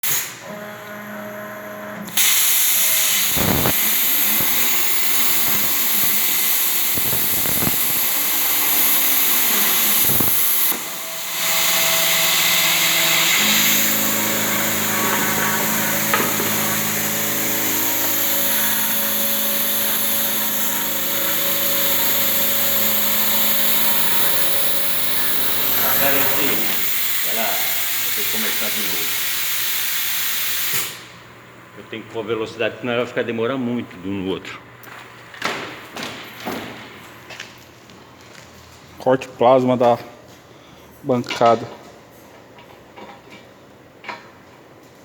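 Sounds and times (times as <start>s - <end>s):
plasma cutter hissing: 0.0s - 0.4s, 2.1s - 31.1s
machine hum: 3.1s - 29.8s.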